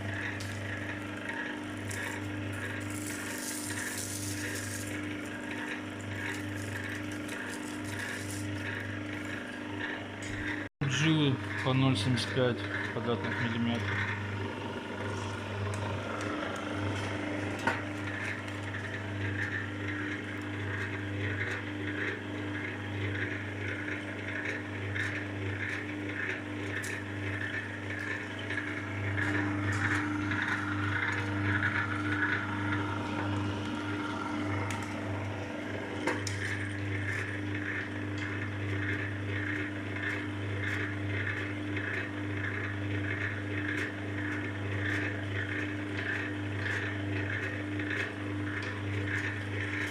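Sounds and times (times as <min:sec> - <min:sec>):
cable-stripping machine humming: 0:00.0 - 0:49.9.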